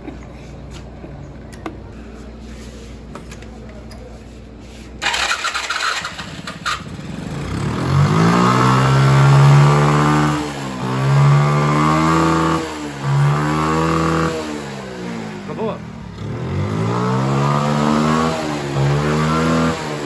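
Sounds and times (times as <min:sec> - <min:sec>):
moped engine revving: 0:04.6 - 0:20.0.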